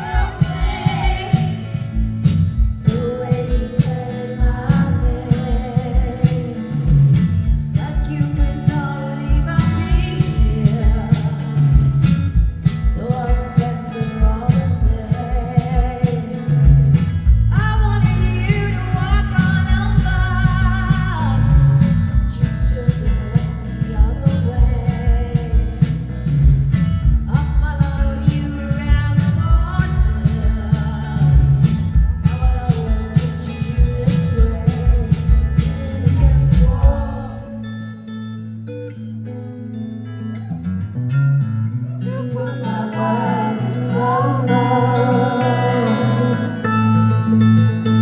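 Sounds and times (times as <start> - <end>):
person singing: 0.0 - 2.1, 27.3 - 37.8, 41.9 - 48.0
rock band playing live: 0.0 - 37.3.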